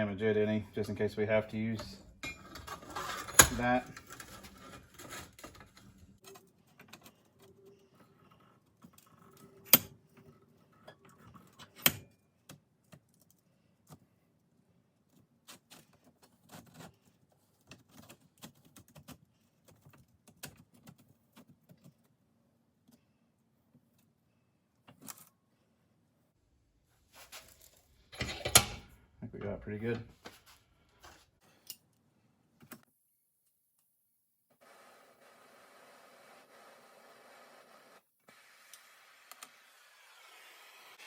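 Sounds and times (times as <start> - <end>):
metal clicks and rattles: 27.6 - 28.9.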